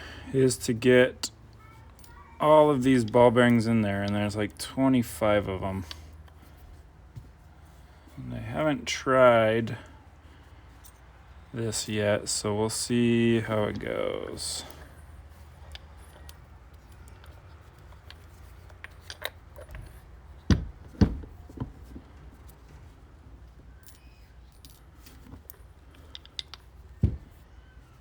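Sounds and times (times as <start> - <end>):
steel ball bearings clicking: 11.7 - 20.2, 23.7 - 27.0
heavy metal knocks: 20.5 - 21.3.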